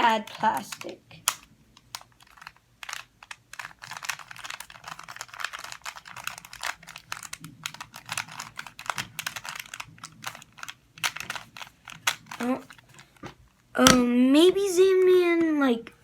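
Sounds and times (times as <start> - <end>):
puzzle cube layers clicking: 0.3 - 12.5.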